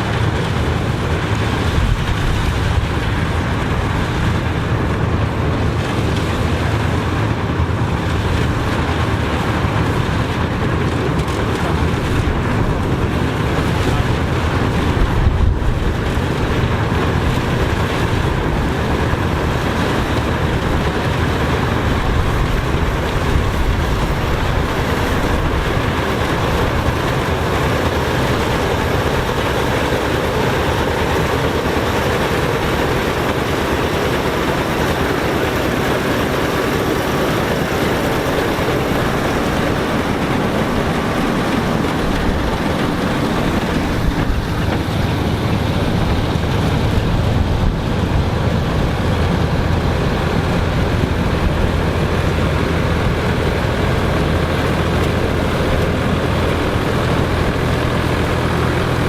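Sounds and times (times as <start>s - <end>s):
dense mechanical noise: 0.0s - 59.0s
harvesting machinery engine drone: 0.0s - 59.0s.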